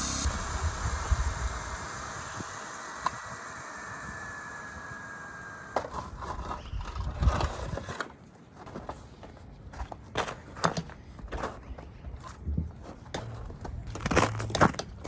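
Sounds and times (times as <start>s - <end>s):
compressed air hissing from hose: 0.0s - 5.4s.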